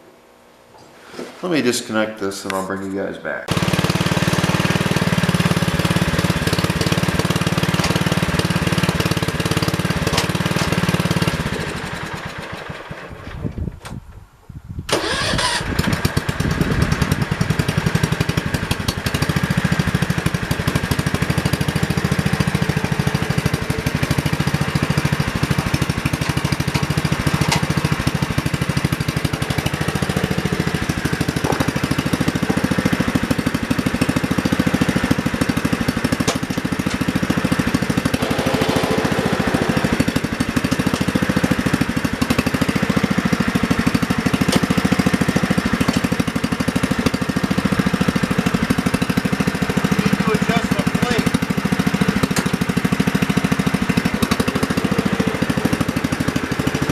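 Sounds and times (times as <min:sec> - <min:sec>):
tractor engine running: 0:03.5 - 0:13.9, 0:14.9 - 0:56.9.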